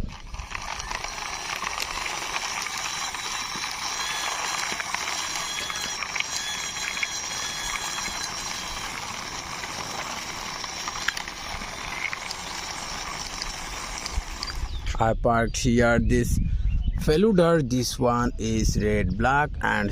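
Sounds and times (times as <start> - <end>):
toy car wheels rattling whirr: 0.0 - 14.9.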